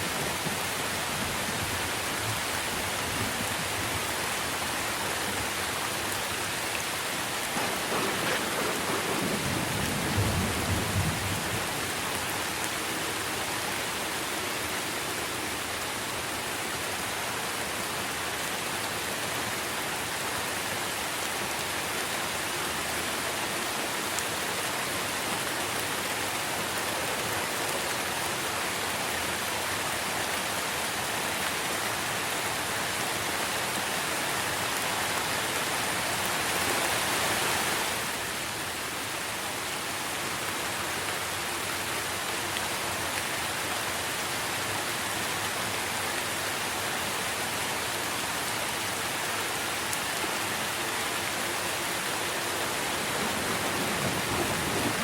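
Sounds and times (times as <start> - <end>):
rain falling on trees: 0.0 - 55.0
low rumble of thunder: 7.5 - 12.0, 52.9 - 55.0.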